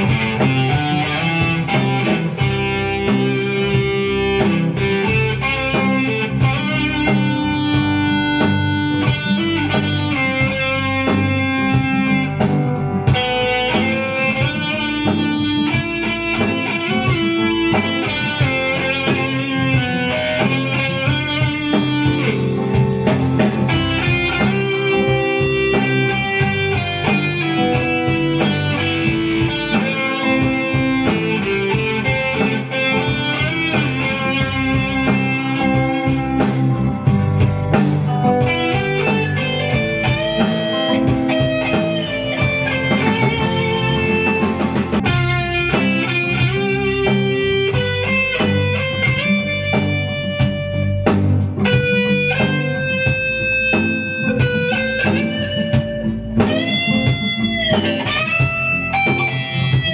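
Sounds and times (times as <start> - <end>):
electric guitar lead line: 0.0 - 59.9
low accompaniment: 0.0 - 59.9.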